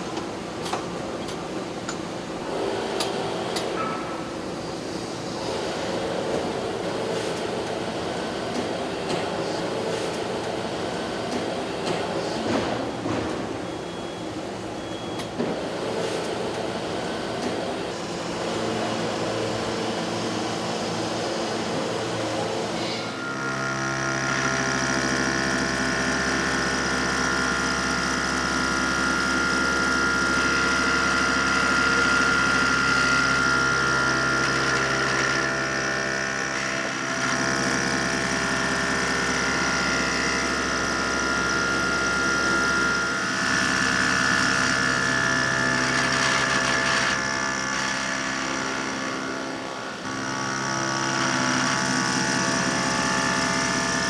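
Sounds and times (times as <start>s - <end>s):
lathe mechanical whine: 13.6s - 54.0s.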